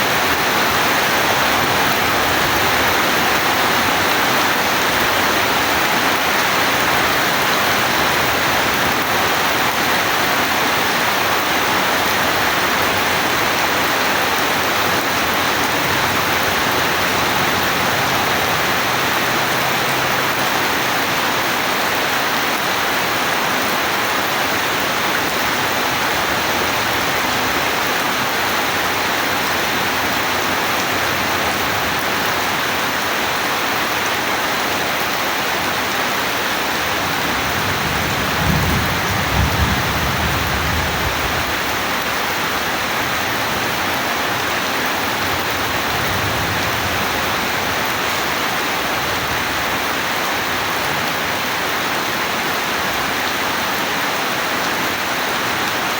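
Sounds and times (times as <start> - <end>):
heavy rainfall: 0.0 - 55.9
thunder rumble: 37.0 - 41.8.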